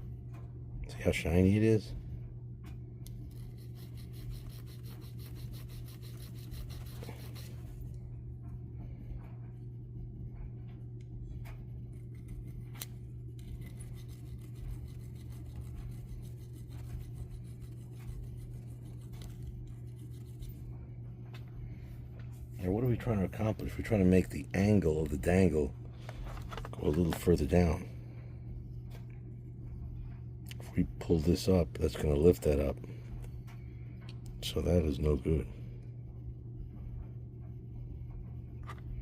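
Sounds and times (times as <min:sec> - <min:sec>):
steady low hum: 0:00.0 - 0:39.0
hand file rasping on brass: 0:03.3 - 0:07.6, 0:13.6 - 0:20.5.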